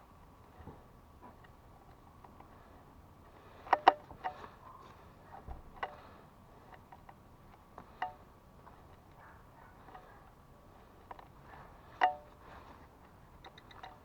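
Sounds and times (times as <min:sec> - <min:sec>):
light knocks and clicks of handling: 0:03.6 - 0:10.2, 0:11.0 - 0:14.0.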